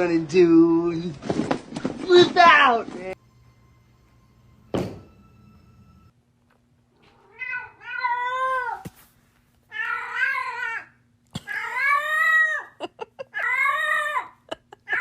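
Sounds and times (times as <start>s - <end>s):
cat yowling meows: 7.2s - 8.8s, 9.7s - 10.9s, 11.5s - 12.7s.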